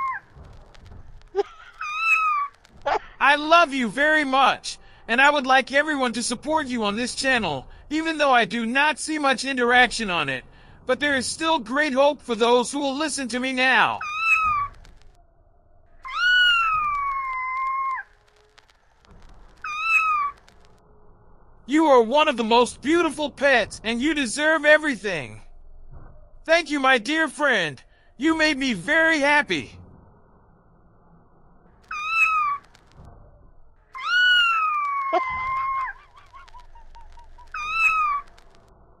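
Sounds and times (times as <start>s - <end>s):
cat meowing: 0.0s - 0.2s, 1.4s - 2.6s, 14.0s - 14.7s, 16.1s - 18.0s, 19.6s - 20.4s, 31.9s - 32.6s, 34.0s - 38.4s.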